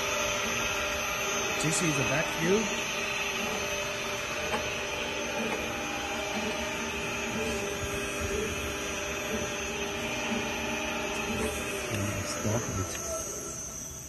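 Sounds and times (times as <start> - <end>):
mixer motor hum and whine: 0.0 - 14.0.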